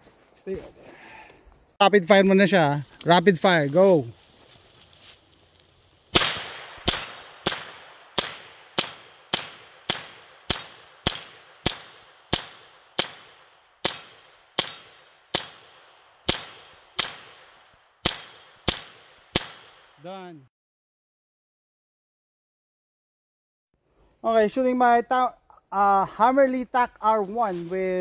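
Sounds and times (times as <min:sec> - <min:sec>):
rifle shots with ringing tail: 0:06.1 - 0:20.0.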